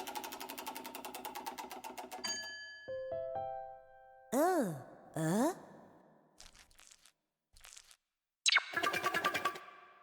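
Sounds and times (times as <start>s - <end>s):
crunching crackle: 6.4s - 8.1s.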